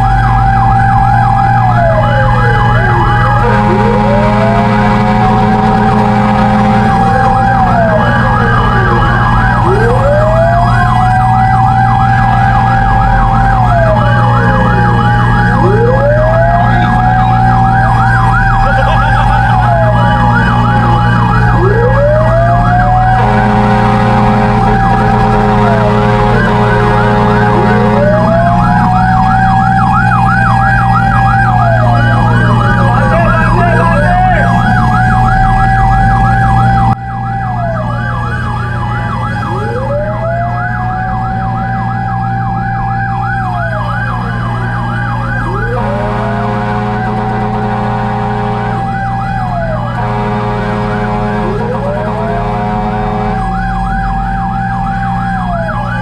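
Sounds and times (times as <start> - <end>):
steady low drone: 0.0 - 56.0
wailing fire truck siren: 0.0 - 56.0
yelping fire truck siren: 0.0 - 56.0.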